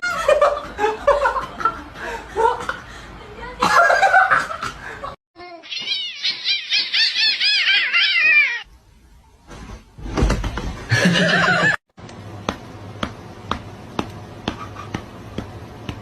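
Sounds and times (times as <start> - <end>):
cat chirping meows: 5.6 - 8.7.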